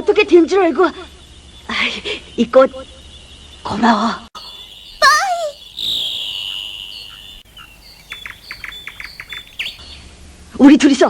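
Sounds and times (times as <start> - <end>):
bird chirping and whistling: 4.4 - 10.0.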